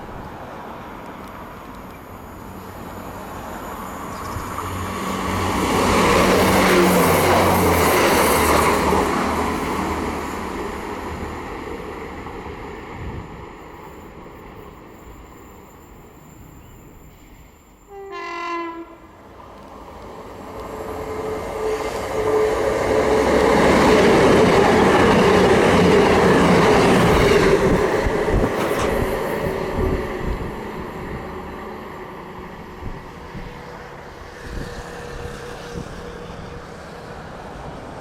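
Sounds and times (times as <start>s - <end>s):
diesel train passing: 0.0s - 38.0s
train horn: 17.8s - 19.2s.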